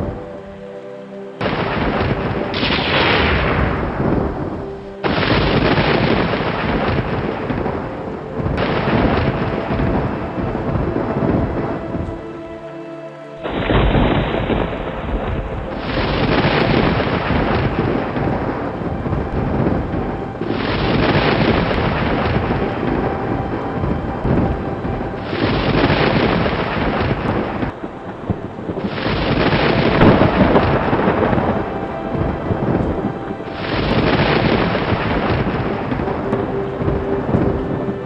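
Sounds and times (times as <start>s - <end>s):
steady rain: 11.4s - 37.6s.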